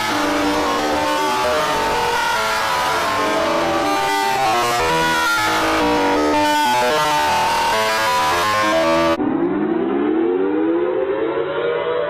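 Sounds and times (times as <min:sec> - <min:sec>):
music with quick melody: 0:00.0 - 0:09.2.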